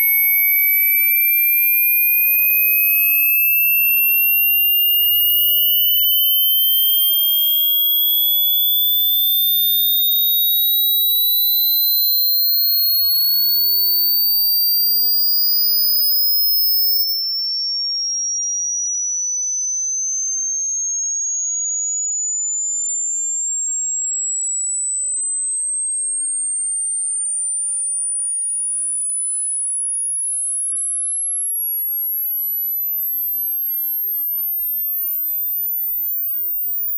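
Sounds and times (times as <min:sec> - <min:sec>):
very high electronic tone: 0:00.0 - 0:14.3
sine wave tone sweeping upward: 0:00.0 - 0:36.9.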